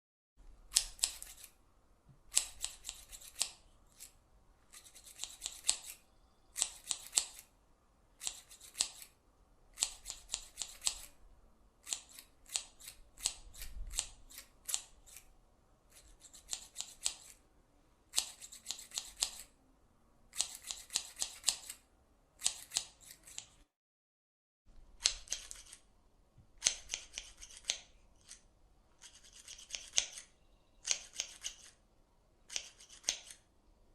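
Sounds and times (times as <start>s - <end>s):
scissors snipping: 0.7s - 1.5s, 2.3s - 6.0s, 6.6s - 7.5s, 8.2s - 9.2s, 9.8s - 11.1s, 11.8s - 15.3s, 15.9s - 17.4s, 18.1s - 19.5s, 20.4s - 21.8s, 22.4s - 23.6s, 25.0s - 25.8s, 26.6s - 28.4s, 29.0s - 31.8s, 32.5s - 33.4s.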